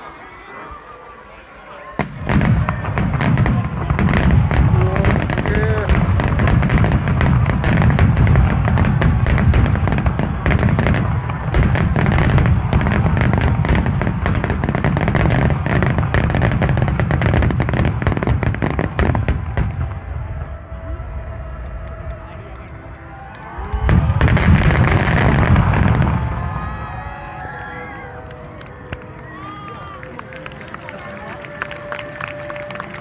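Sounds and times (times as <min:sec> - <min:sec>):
fireworks booming and crackling: 0:02.0 - 0:27.4.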